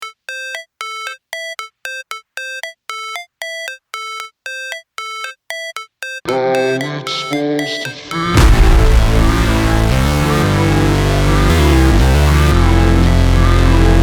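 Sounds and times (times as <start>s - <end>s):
synthesizer melody: 0.0s - 14.0s
electronic track with bass: 6.4s - 14.0s.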